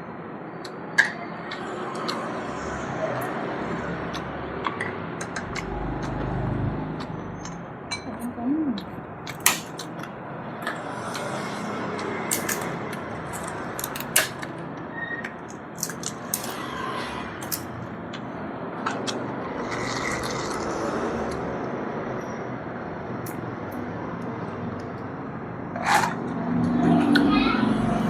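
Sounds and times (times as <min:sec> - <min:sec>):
steady background noise: 0:00.0 - 0:28.0.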